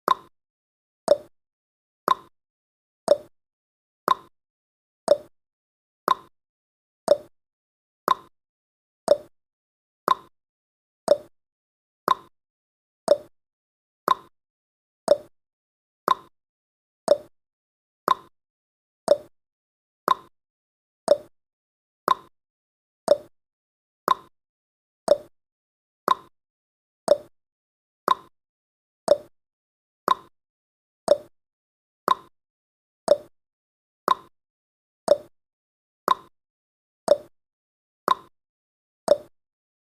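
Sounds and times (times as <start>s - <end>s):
timer tick-tock: 0.0s - 0.3s, 1.1s - 1.3s, 2.1s - 2.3s, 3.1s - 3.3s, 4.1s - 4.3s, 5.1s - 5.3s, 6.1s - 6.3s, 7.1s - 7.3s, 8.1s - 8.3s, 9.1s - 9.3s, 10.1s - 10.3s, 11.1s - 11.3s, 12.1s - 12.3s, 13.1s - 13.3s, 14.1s - 14.3s, 15.1s - 15.3s, 16.1s - 16.3s, 17.1s - 17.3s, 18.1s - 18.3s, 19.1s - 19.3s, 20.1s - 20.3s, 21.1s - 21.3s, 22.1s - 22.3s, 23.1s - 23.3s, 24.1s - 24.3s, 25.1s - 25.3s, 26.1s - 26.3s, 27.1s - 27.3s, 28.1s - 28.3s, 29.1s - 29.3s, 30.1s - 30.3s, 31.1s - 31.3s, 32.1s - 32.3s, 33.1s - 33.3s, 34.1s - 34.3s, 35.1s - 35.3s, 36.1s - 36.3s, 37.1s - 37.3s, 38.1s - 38.3s, 39.1s - 39.4s.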